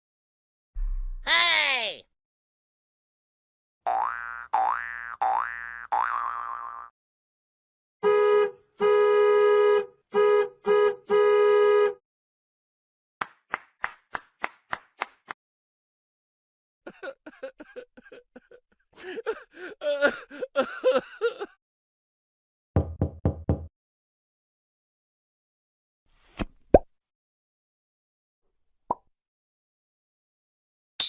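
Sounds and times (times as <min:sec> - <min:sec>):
horn-like comedy honks: 0:08.0 - 0:12.0.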